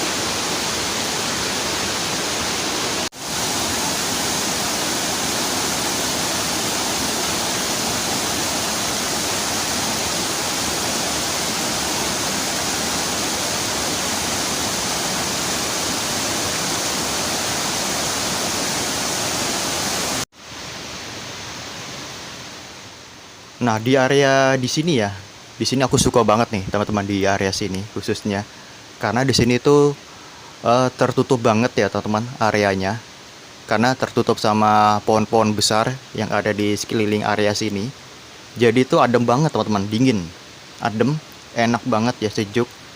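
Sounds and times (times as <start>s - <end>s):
waterfall rushing: 0.0s - 22.7s.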